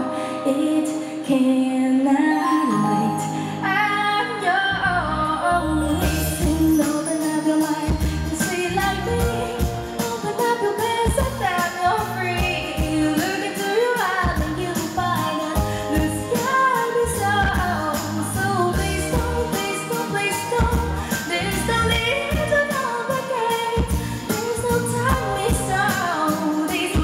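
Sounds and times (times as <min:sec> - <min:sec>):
woman singing pop: 0:00.0 - 0:27.0
steady drum beat: 0:07.9 - 0:22.9, 0:23.6 - 0:27.0.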